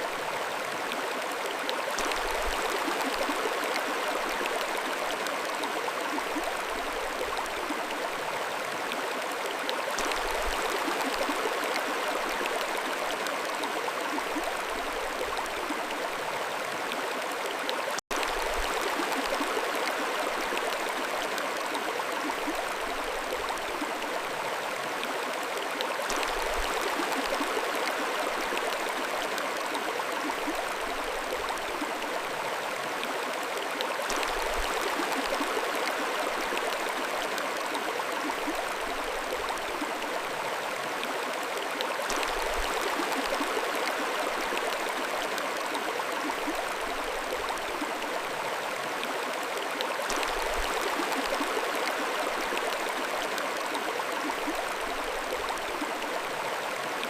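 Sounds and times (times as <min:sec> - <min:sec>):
stream flowing: 0:00.0 - 0:57.0.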